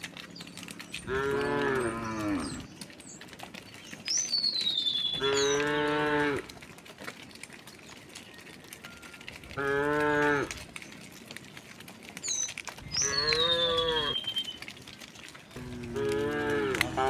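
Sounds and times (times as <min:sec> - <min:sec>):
cattle mooing: 0:01.0 - 0:02.7, 0:05.2 - 0:06.5, 0:09.6 - 0:10.6, 0:12.8 - 0:14.2, 0:15.6 - 0:17.0.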